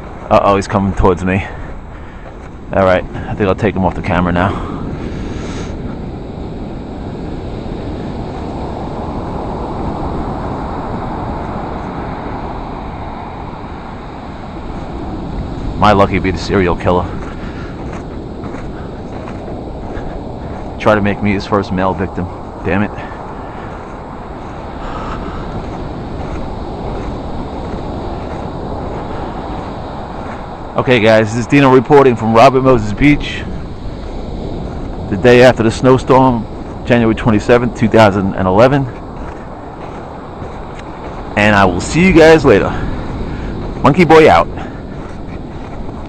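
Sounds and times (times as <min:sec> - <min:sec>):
ocean surf: 0:00.0 - 0:46.0
wind: 0:00.0 - 0:46.0.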